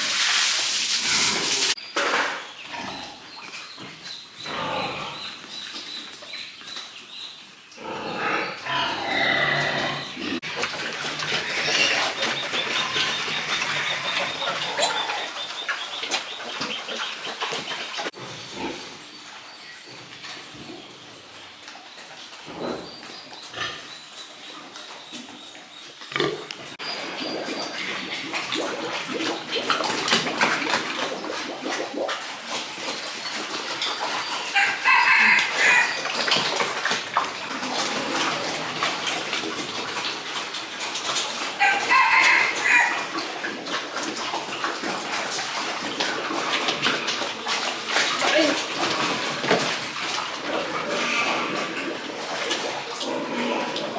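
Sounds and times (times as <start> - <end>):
rooster crowing: 34.6 - 36.0, 41.6 - 43.1.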